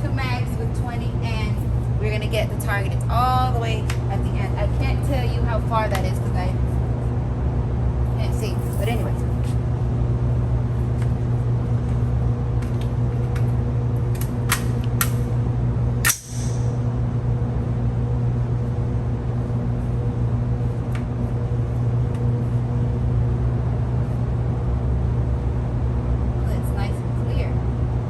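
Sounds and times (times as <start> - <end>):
low mechanical hum: 0.0 - 28.0
sharp loud crack: 16.1 - 16.7.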